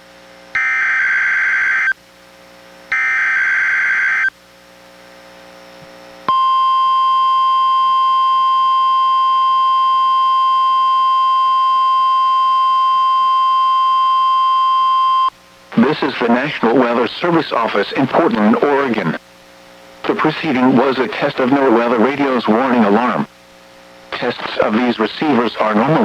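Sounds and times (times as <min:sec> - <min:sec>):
steady warning alarm tone: 0:00.6 - 0:02.0, 0:02.9 - 0:04.3, 0:06.3 - 0:19.1.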